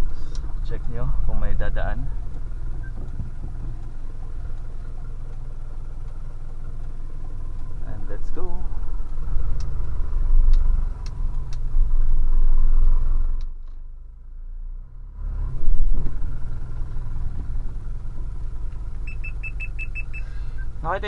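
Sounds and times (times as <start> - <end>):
sharp ticks: 0.0 - 11.7
truck engine running: 0.0 - 21.0.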